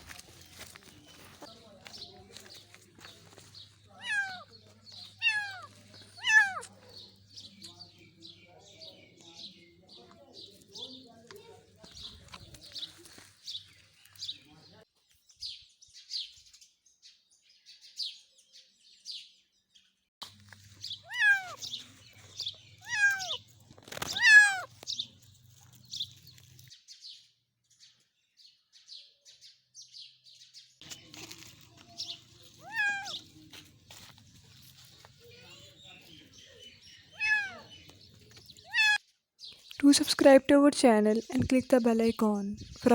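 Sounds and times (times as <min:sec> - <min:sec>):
small birds chirping: 0:00.0 - 0:42.9
kitten meowing: 0:04.0 - 0:04.5, 0:05.2 - 0:06.7, 0:21.0 - 0:21.7, 0:22.8 - 0:23.4, 0:24.0 - 0:24.7, 0:32.6 - 0:33.2, 0:37.1 - 0:37.7, 0:38.6 - 0:39.0.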